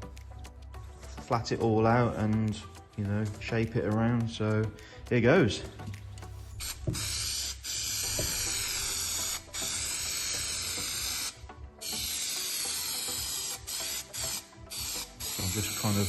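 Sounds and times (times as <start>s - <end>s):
aerosol can spraying hiss: 6.2s - 16.0s.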